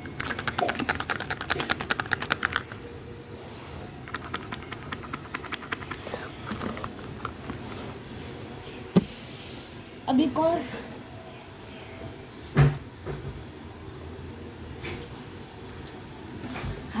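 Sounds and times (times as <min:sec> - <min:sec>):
container rattling: 0:00.0 - 0:02.8, 0:04.1 - 0:07.8.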